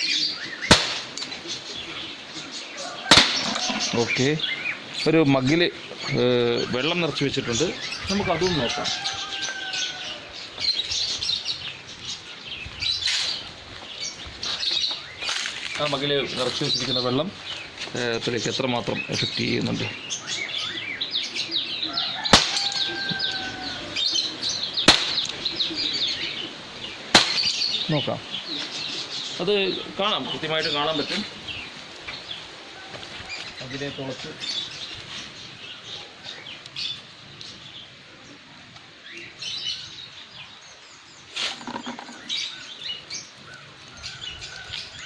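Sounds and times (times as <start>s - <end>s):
birds chirping: 0.0s - 45.0s
sharp crack: 0.6s - 1.6s, 3.1s - 4.1s, 22.2s - 23.1s, 24.4s - 25.9s, 27.1s - 28.0s
bb pistol shots: 0.7s - 1.2s, 3.1s - 3.5s, 22.3s - 22.7s, 24.8s - 25.4s, 27.1s - 27.6s.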